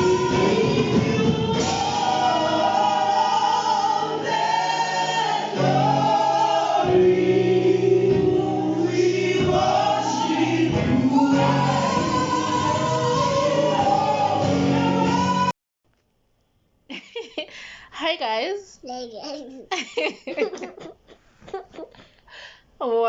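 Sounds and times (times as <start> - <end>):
gospel choir singing: 0.0 - 15.5.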